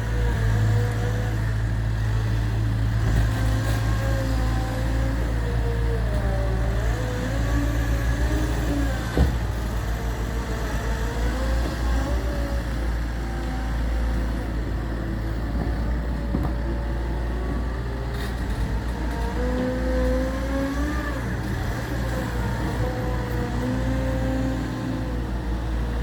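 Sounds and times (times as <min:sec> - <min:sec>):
diesel engine running with whine: 0:00.0 - 0:26.0.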